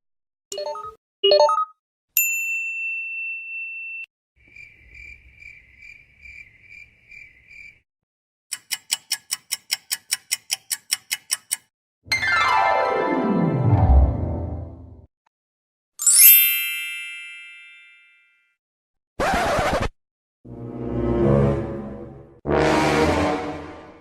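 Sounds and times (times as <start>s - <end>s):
pulsing cricket-like chirp: 4.4s - 7.8s
fast ticks: 8.5s - 11.7s
high ding ringing: 16.0s - 18.3s.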